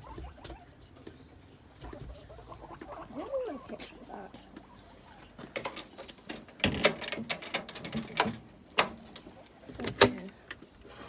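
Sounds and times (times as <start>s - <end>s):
guinea pig squeaking: 0.0s - 6.0s.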